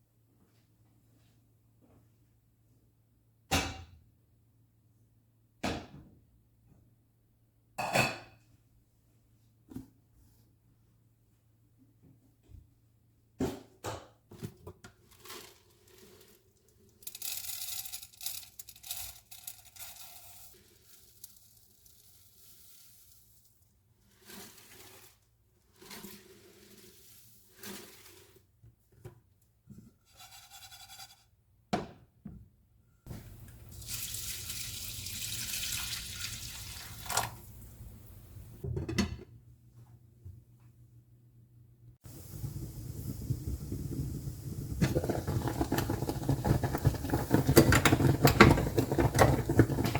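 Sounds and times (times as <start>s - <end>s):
water running from a tap: 33.2s - 37.9s.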